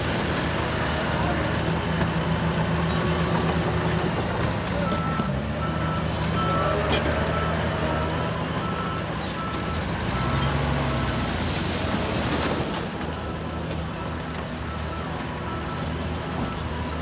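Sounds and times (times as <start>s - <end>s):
diesel machine running: 0.0s - 17.0s
reversing alarm beeping: 4.7s - 11.2s.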